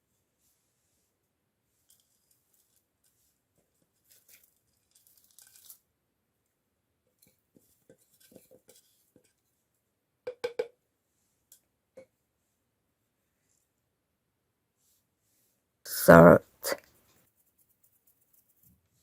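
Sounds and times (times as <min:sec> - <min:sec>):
rustling scrape: 0:00.4 - 0:05.8.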